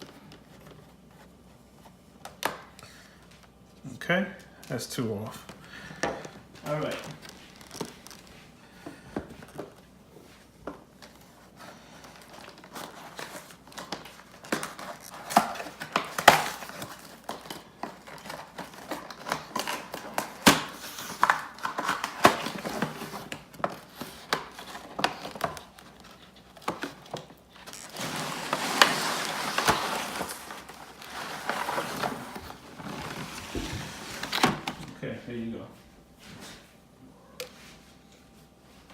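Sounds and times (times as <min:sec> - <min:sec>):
packaging crinkling and rustling: 0:04.6 - 0:08.6, 0:09.2 - 0:35.0.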